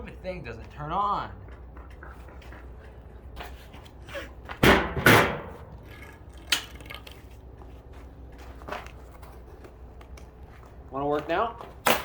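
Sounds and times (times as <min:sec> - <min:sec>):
loud knocks: 0:04.6 - 0:05.7.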